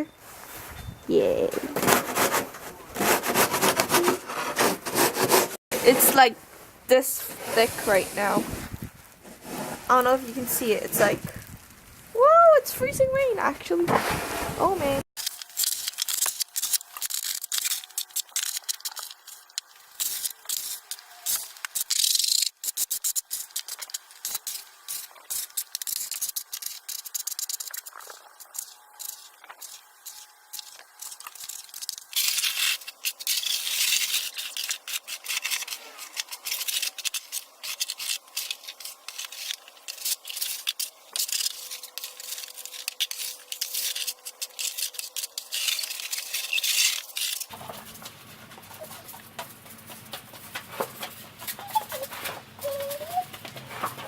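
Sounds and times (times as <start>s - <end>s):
snow shovel scraping snow: 1.8s - 6.4s, 7.1s - 10.1s, 13.9s - 15.0s.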